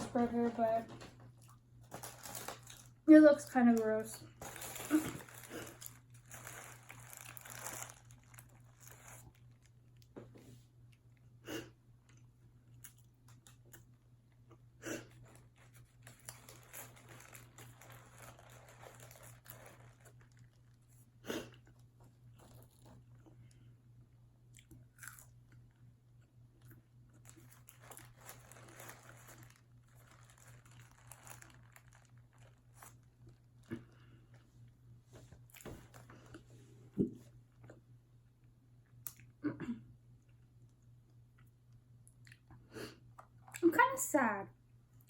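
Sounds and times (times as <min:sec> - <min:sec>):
person chewing food: 0:24.5 - 0:25.8.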